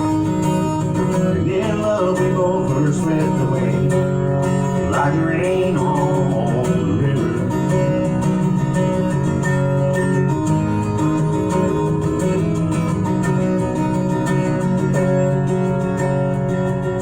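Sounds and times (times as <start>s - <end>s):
strummed acoustic guitar: 0.0s - 17.0s.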